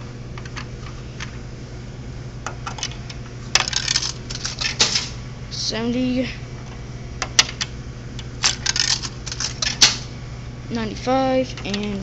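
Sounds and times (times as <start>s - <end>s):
steady low hum: 0.0s - 12.0s
coins clinking in vending machine: 3.6s - 5.2s, 8.4s - 10.1s.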